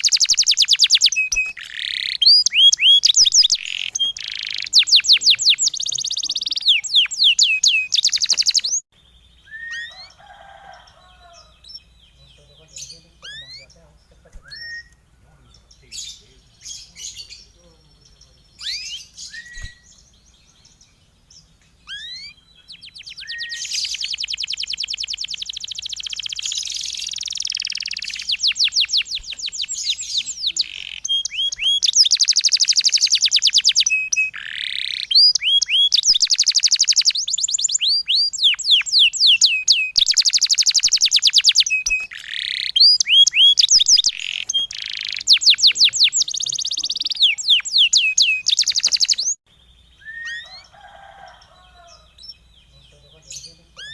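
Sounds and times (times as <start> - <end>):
bird whistles: 0.0 - 8.8, 9.4 - 10.0, 14.4 - 15.0, 18.6 - 20.0, 21.8 - 49.4, 50.0 - 50.6
songbird trilling: 0.0 - 53.9.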